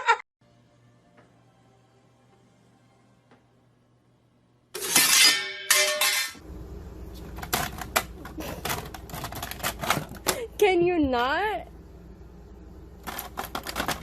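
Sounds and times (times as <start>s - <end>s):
glass breaking: 4.8s - 6.4s.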